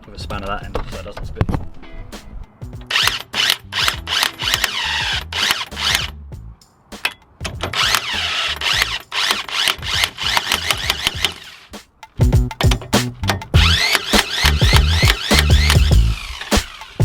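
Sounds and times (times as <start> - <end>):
rock music with drums and bass: 2.1 - 7.9, 9.8 - 17.0.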